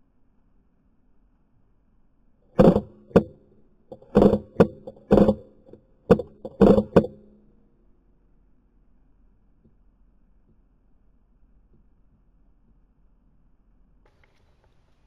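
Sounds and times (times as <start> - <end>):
ringing hum: 2.6 - 7.2.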